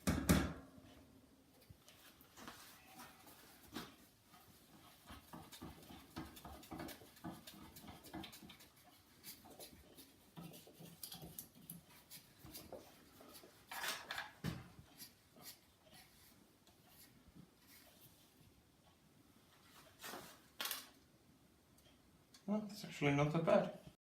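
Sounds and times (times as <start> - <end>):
scraping rustle: 19.5 - 20.7.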